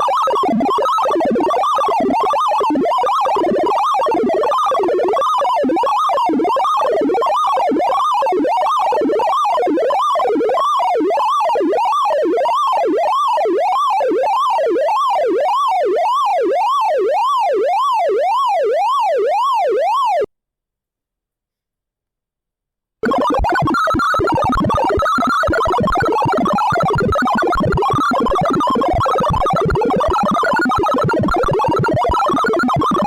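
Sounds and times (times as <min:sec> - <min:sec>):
synthesized sweeping tones: 0:23.0 - 0:32.0.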